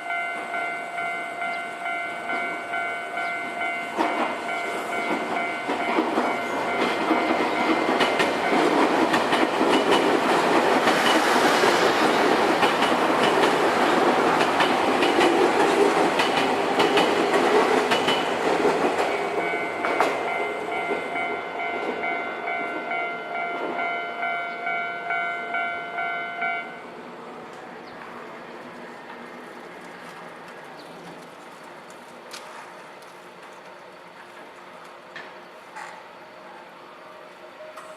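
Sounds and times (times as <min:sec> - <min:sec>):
crossing warning bell ringing: 0:00.0 - 0:10.0, 0:17.8 - 0:27.0
train wheels clicking over rail joints: 0:00.1 - 0:24.0.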